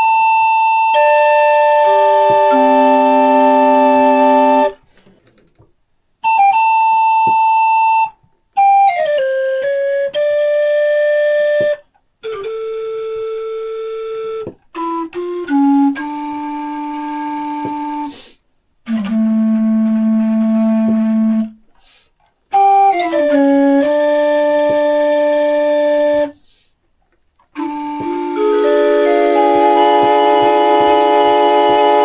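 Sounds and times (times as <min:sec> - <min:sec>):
organ pipes playing chords: 0:00.9 - 0:04.8, 0:27.6 - 0:32.0.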